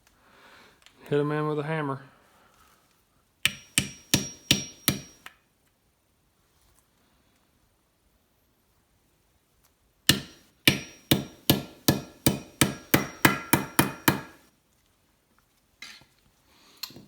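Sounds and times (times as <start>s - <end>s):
hammer blows with ring: 3.5s - 5.2s, 10.1s - 14.4s.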